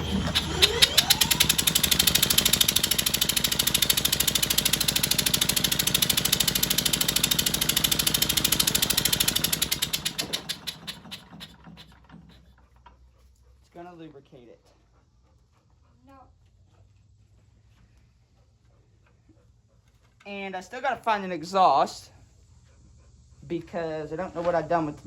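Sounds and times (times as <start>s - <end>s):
electric drill whine: 0.0s - 10.8s
single-cylinder engine chuffing: 0.0s - 12.9s.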